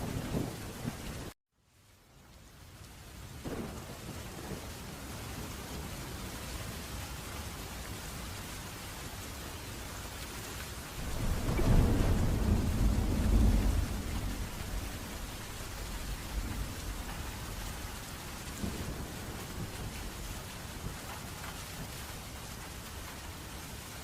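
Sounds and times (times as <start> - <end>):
thunder rumbling: 0.0 - 1.3, 3.4 - 6.2, 11.0 - 23.1
steady rain: 0.0 - 24.0.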